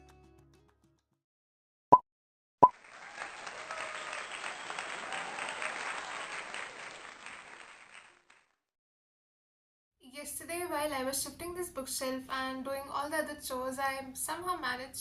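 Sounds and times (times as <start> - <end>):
applause: 2.7 - 8.6.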